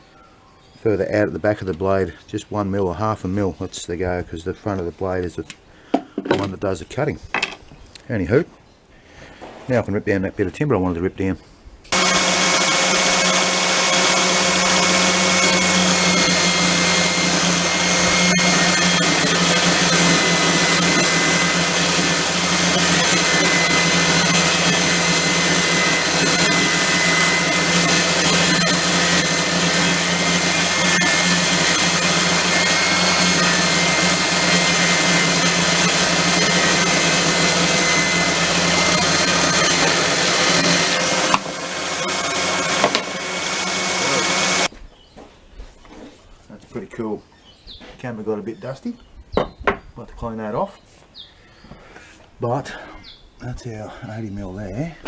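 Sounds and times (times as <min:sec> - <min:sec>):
table saw ripping timber: 0:11.9 - 0:44.7.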